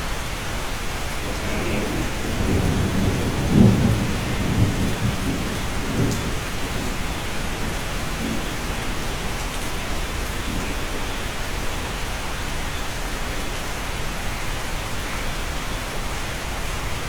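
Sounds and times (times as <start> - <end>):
steady rain falling: 0.0 - 17.0
low roll of thunder: 1.0 - 11.4.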